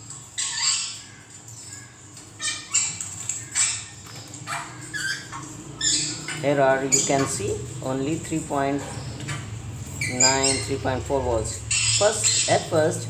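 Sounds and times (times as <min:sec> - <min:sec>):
animal high-pitched calls: 0:00.2 - 0:07.4.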